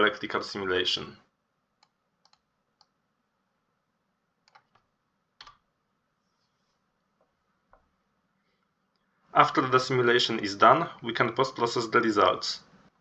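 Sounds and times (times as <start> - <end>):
computer keyboard clicks: 1.8 - 2.9, 4.5 - 4.8.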